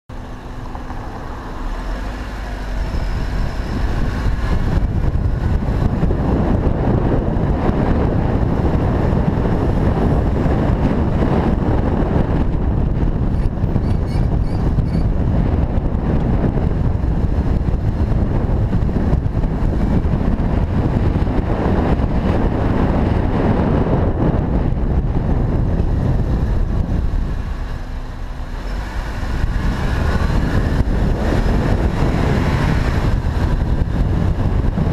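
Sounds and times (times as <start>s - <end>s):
car engine and road noise: 0.1s - 34.9s
faint high squeaks: 13.4s - 15.1s.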